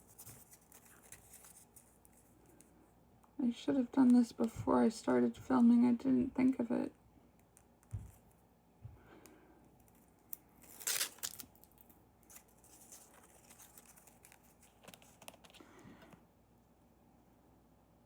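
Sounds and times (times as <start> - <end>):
tape ripping off roll: 10.6 - 11.7
soft rustling and light clicks: 12.3 - 16.2.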